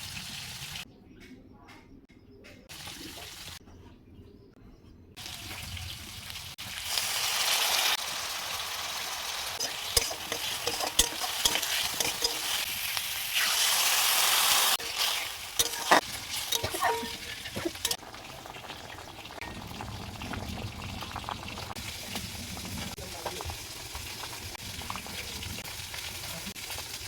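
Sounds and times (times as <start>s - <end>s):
food sizzling in hot oil: 0.0s - 0.8s, 5.2s - 27.0s
spatula clinking against pan: 9.6s - 12.6s, 14.8s - 18.0s.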